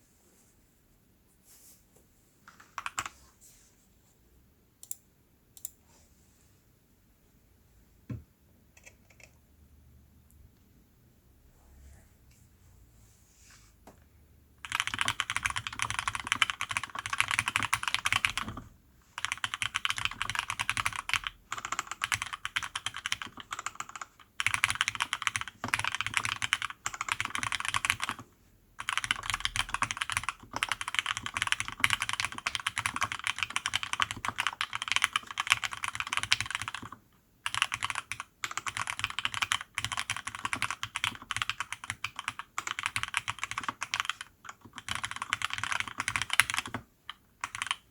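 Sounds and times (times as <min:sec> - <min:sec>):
fast mechanical keyboard typing: 0:02.5 - 0:03.1, 0:08.8 - 0:09.4, 0:14.6 - 0:47.9.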